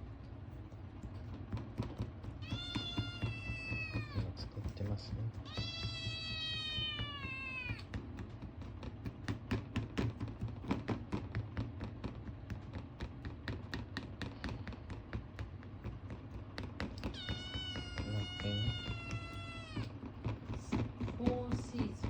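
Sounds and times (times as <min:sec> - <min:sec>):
quick irregular clicks and taps: 0:00.2 - 0:21.2
kitten meowing: 0:02.4 - 0:04.4, 0:05.3 - 0:07.8, 0:17.0 - 0:20.0.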